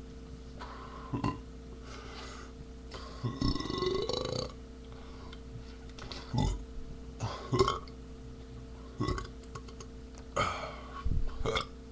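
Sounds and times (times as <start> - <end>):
man burping: 1.1 - 1.4, 3.0 - 4.6, 6.3 - 6.6, 7.2 - 7.9, 9.0 - 10.8, 11.4 - 11.7.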